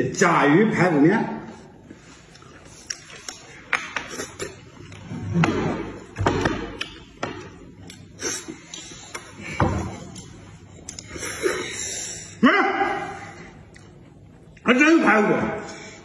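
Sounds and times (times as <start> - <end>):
eating and handling noise: 0.2 - 16.0.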